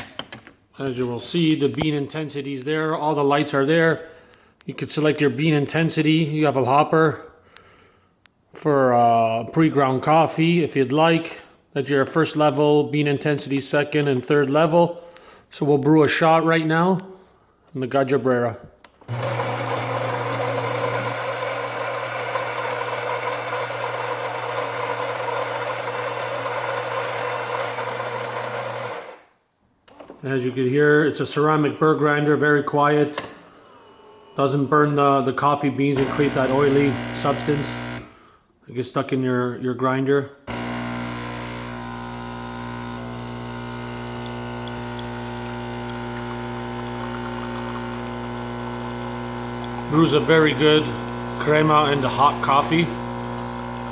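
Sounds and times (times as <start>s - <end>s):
espresso machine pump humming: 19.1s - 29.2s, 36.0s - 38.1s, 40.5s - 53.9s
coffee grinder grinding beans: 19.1s - 29.3s, 36.0s - 38.1s, 40.5s - 53.9s.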